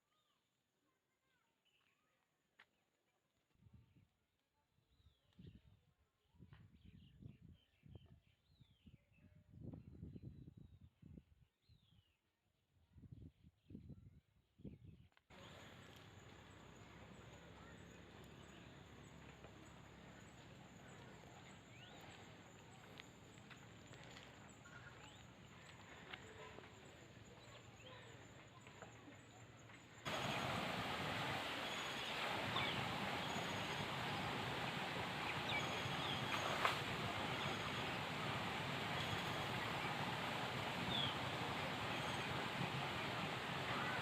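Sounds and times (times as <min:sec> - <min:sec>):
flowing river water: 0:15.3 - 0:27.8, 0:30.0 - 0:44.0
rising bird chirp: 0:30.1 - 0:44.0.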